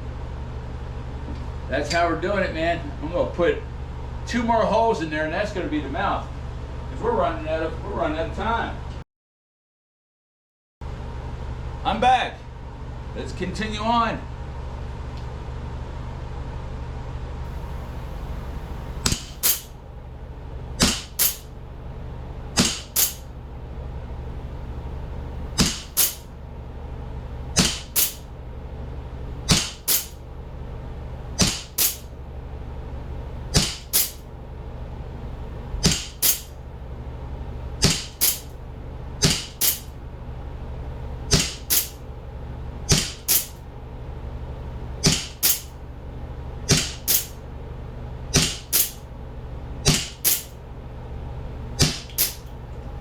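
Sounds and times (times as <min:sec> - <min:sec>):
air pistol shots cracking: 0:17.5 - 0:19.8, 0:20.8 - 0:21.5, 0:22.6 - 0:23.3, 0:25.6 - 0:26.3, 0:27.6 - 0:28.3, 0:29.5 - 0:30.2, 0:31.4 - 0:32.1, 0:33.5 - 0:34.3, 0:35.8 - 0:36.6, 0:37.8 - 0:38.6, 0:39.2 - 0:40.0, 0:41.3 - 0:42.0, 0:42.9 - 0:43.6, 0:45.0 - 0:45.8, 0:46.7 - 0:47.4, 0:48.4 - 0:49.0, 0:49.9 - 0:50.6, 0:51.8 - 0:52.5
steady low hum: 0:17.5 - 0:53.0.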